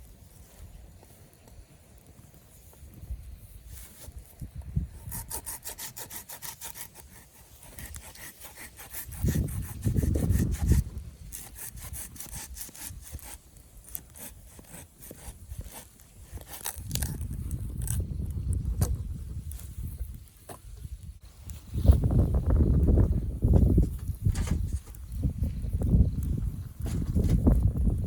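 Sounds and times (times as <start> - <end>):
hand saw cutting wood: 5.0 - 18.0.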